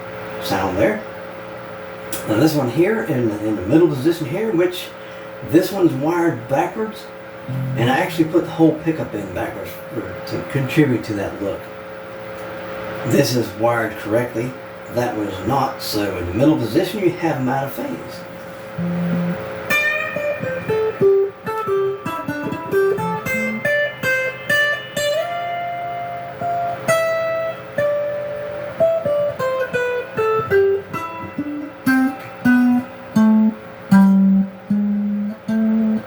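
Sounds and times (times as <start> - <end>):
clean electric guitar lead lines: 7.4 - 10.3, 16.3 - 36.0.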